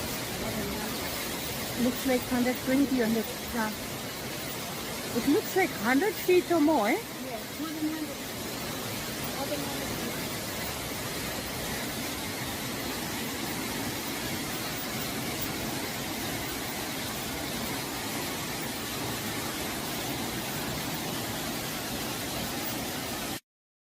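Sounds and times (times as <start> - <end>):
waterfall rushing: 0.0 - 23.4.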